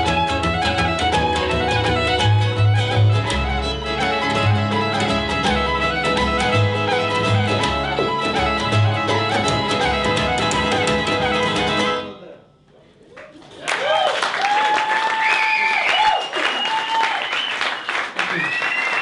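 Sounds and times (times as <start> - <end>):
fiddle melody: 0.0 - 12.4
strummed guitar: 0.0 - 12.4
bass line: 0.0 - 12.5.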